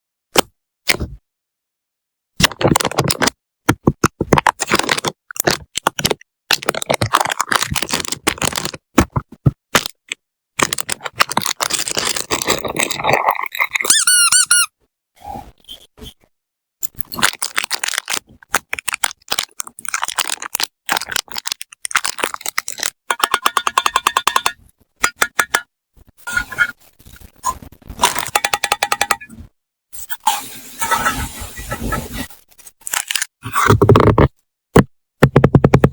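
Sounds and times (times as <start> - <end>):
wrapping crinkling and rustling: 4.6 - 8.8, 10.6 - 13.2, 17.0 - 23.0, 32.2 - 33.3
high squeak: 13.9 - 14.7, 30.0 - 32.3.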